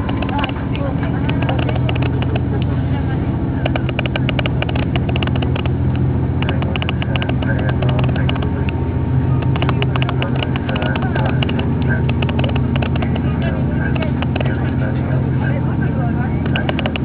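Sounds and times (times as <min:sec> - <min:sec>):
light clicking and rattling: 0:00.0 - 0:02.8, 0:03.6 - 0:15.6, 0:16.3 - 0:17.0
diesel railcar engine drone: 0:00.0 - 0:17.0.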